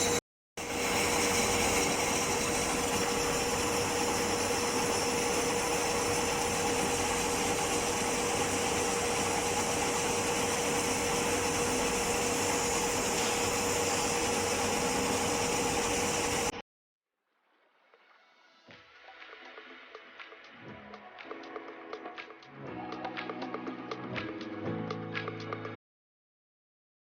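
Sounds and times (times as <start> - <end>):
metalworking lathe running: 0.0 - 16.5.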